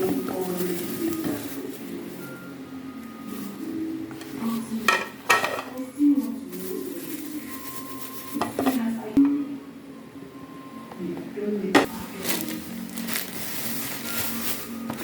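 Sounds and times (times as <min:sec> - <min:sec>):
hard objects clattering: 0:00.0 - 0:02.5, 0:04.2 - 0:09.0, 0:11.8 - 0:15.0.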